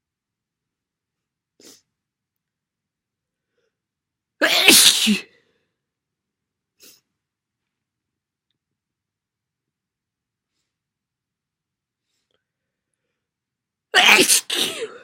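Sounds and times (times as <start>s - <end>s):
person sneezing: 4.4s - 5.4s, 14.0s - 15.0s.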